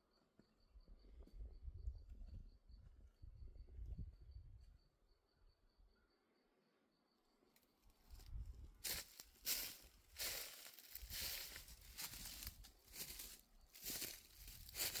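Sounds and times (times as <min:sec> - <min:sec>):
footsteps crunching through dry leaves: 0:08.8 - 0:15.0.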